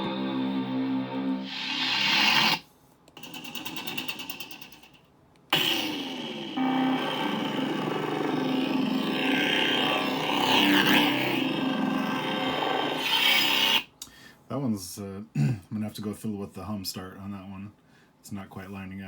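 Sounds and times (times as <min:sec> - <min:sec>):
lightsaber ignition sweep: 0:01.4 - 0:02.6
lightsaber hum: 0:05.6 - 0:13.8.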